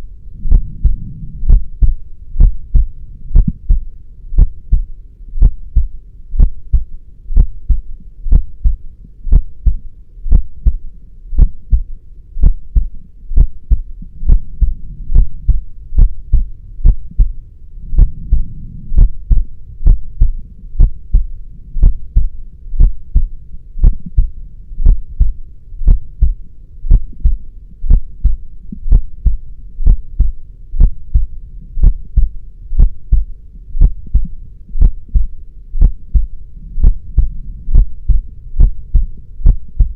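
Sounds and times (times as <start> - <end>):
faint low rumble: 0.0 - 39.9
heartbeat double thud: 0.4 - 3.8, 11.4 - 39.9.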